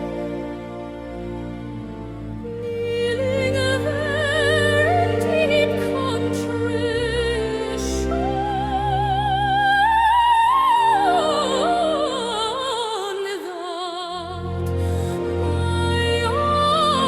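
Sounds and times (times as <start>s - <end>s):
sustained low chords: 0.0s - 9.9s.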